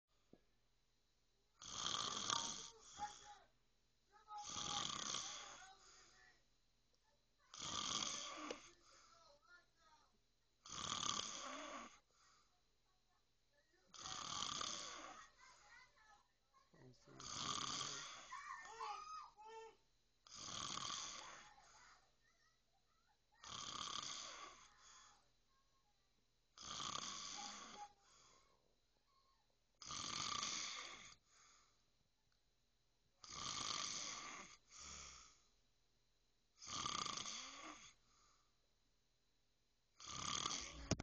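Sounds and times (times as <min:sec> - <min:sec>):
person snoring: 0:01.6 - 0:03.4, 0:04.4 - 0:05.8, 0:07.5 - 0:08.8, 0:10.6 - 0:12.0, 0:13.9 - 0:15.5, 0:17.0 - 0:19.6, 0:20.3 - 0:22.0, 0:23.4 - 0:25.2, 0:26.6 - 0:28.0, 0:29.8 - 0:31.2, 0:33.2 - 0:35.2, 0:36.6 - 0:38.0, 0:40.0 - 0:41.0
soft breath: 0:04.2 - 0:06.5, 0:08.1 - 0:10.0, 0:11.4 - 0:13.0, 0:14.6 - 0:16.2, 0:21.0 - 0:22.4, 0:24.1 - 0:25.5, 0:27.3 - 0:28.7, 0:30.8 - 0:31.9, 0:37.5 - 0:38.6.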